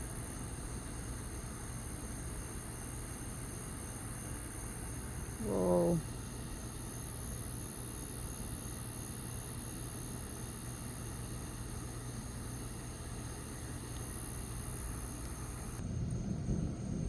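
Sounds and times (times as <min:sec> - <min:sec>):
constant low hum: 0:00.0 - 0:17.0.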